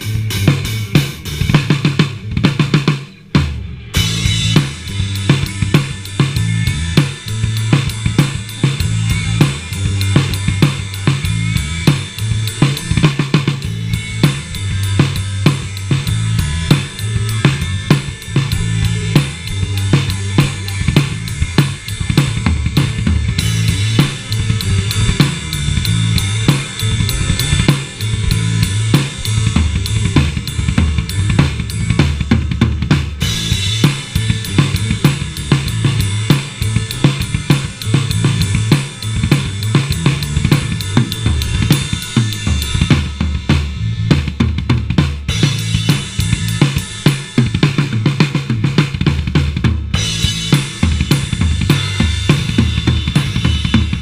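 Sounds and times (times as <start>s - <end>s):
drum kit beat: 0.0s - 54.0s
low bass notes: 0.0s - 54.0s.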